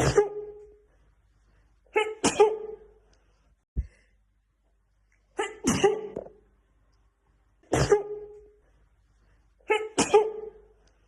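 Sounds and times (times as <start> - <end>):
woman sneezing: 0.0 - 0.6, 1.9 - 2.9, 5.4 - 6.2, 7.7 - 8.3, 9.6 - 10.6.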